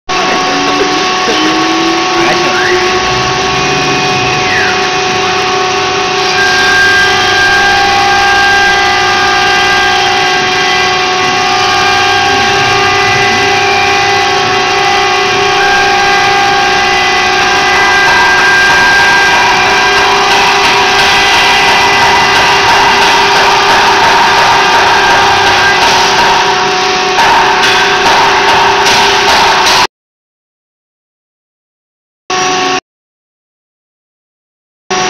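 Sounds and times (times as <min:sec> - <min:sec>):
short gliding whines: 0:00.1 - 0:28.4
router machine whine: 0:00.1 - 0:29.8.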